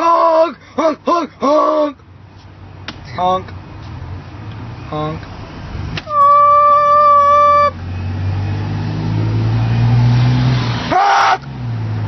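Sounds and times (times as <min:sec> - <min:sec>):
car horn: 0:10.9 - 0:11.5.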